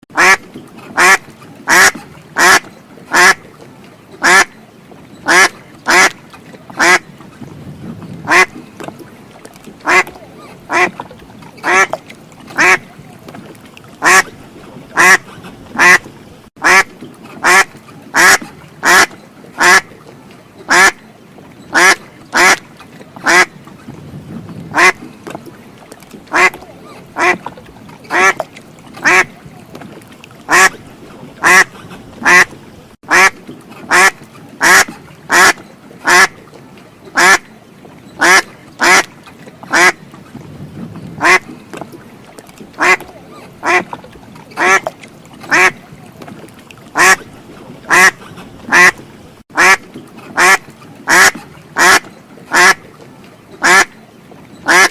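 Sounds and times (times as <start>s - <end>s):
duck quacking: 0.2s - 0.4s, 1.0s - 3.4s, 4.2s - 4.5s, 5.3s - 6.2s, 6.8s - 7.0s, 8.2s - 8.5s, 9.8s - 11.0s, 11.6s - 12.0s, 12.6s - 12.9s, 14.0s - 14.3s, 15.0s - 19.9s, 20.7s - 21.0s, 21.7s - 22.6s, 23.2s - 23.5s, 24.7s - 25.0s, 26.3s - 27.4s, 28.1s - 28.4s, 29.0s - 29.4s, 30.5s - 30.8s, 31.4s - 32.5s, 33.1s - 36.3s, 37.2s - 37.4s, 38.2s - 39.1s, 39.7s - 40.0s, 41.2s - 41.4s, 42.8s - 43.0s, 43.6s - 43.8s, 44.6s - 44.9s, 45.5s - 45.8s, 47.0s - 47.2s, 47.9s - 49.0s, 49.6s - 49.8s, 50.4s - 52.8s, 53.6s - 53.9s, 54.7s - 54.9s.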